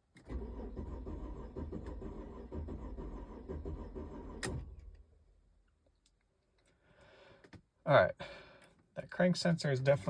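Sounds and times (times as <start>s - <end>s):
engine cranking on starter motor: 0.2s - 4.9s.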